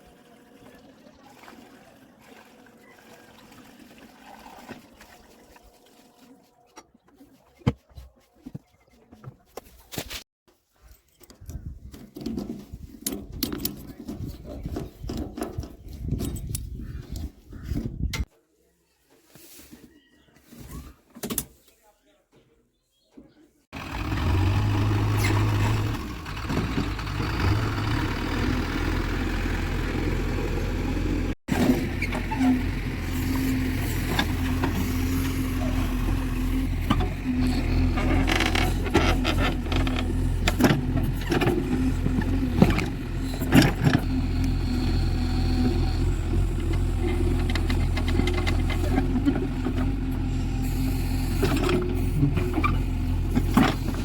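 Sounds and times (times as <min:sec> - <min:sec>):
diesel engine running under load: 0:23.8 - 0:54.0
knocks and clunks: 0:36.8 - 0:44.2.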